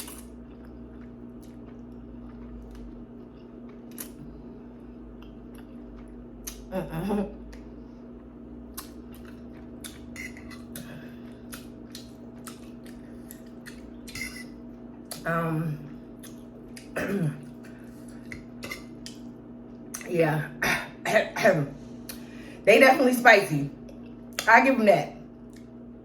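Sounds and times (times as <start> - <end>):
chewing smacks: 0.0 - 4.3, 8.7 - 15.2, 16.1 - 19.3
steady electrical hum: 0.0 - 26.0.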